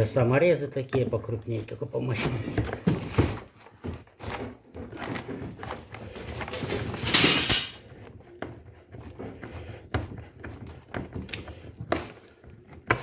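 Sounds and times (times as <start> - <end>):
metal scraping clatter: 5.0 - 7.8
clicks and knocks of tools: 7.0 - 7.8.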